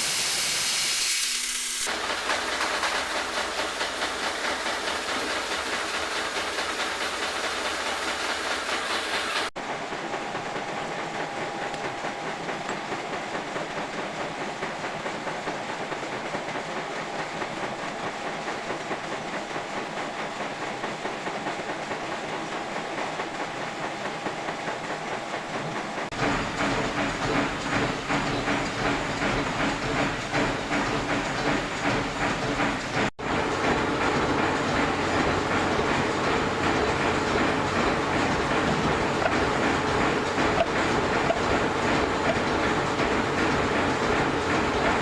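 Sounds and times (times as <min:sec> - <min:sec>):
metal lathe machining steel: 0:26.2 - 0:45.0.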